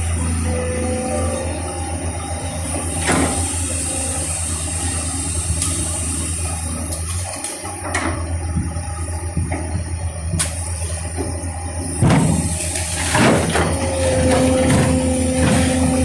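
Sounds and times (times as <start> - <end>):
diesel excavator engine running: 0.0 - 16.0
metal knocks and clanks: 12.0 - 16.0.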